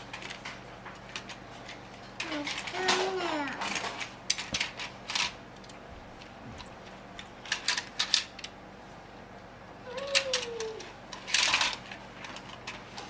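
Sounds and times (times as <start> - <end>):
child's falling vocal sound: 9.8 - 10.9.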